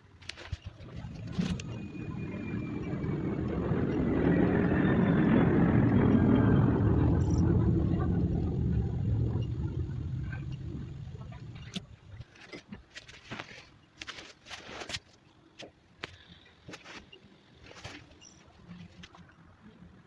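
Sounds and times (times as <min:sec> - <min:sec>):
vehicle passing by: 0:00.8 - 0:11.6
high tone sliding down: 0:00.8 - 0:11.8.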